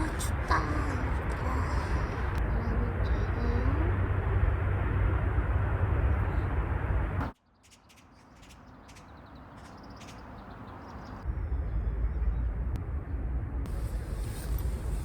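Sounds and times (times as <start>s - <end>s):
road traffic rumble: 0.0s - 15.0s
small birds chirping: 7.3s - 11.2s.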